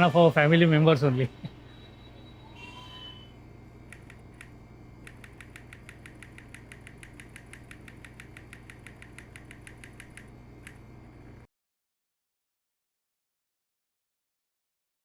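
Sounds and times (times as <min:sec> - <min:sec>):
steady low hum: 0:00.0 - 0:11.5.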